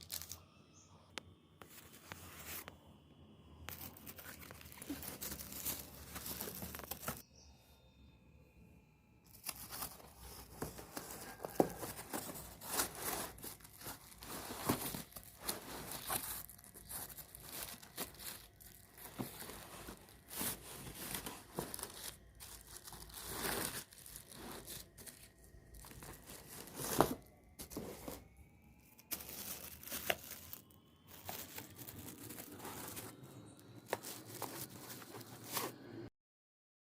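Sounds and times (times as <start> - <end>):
packaging tearing and crinkling: 0.0 - 0.4, 3.7 - 7.2, 9.3 - 35.8.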